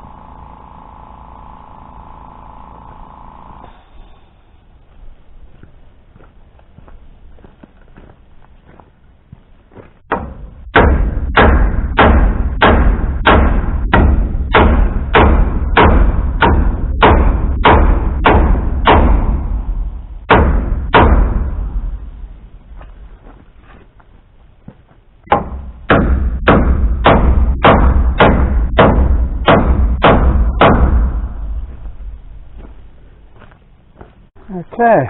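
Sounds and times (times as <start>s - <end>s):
hammer driving nails into wood: 10.1s - 19.4s, 25.3s - 31.0s.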